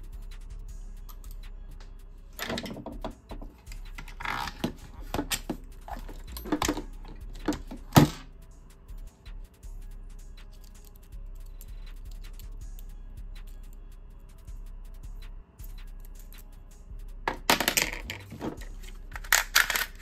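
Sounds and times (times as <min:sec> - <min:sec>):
plastic and metal parts clicking: 0:17.3 - 0:20.0.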